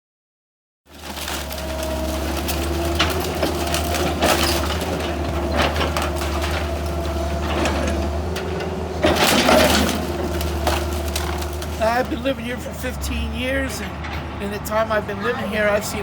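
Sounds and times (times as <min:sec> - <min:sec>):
heavy machinery engine drone: 0:00.9 - 0:16.0
wood and debris cracking: 0:00.9 - 0:16.0.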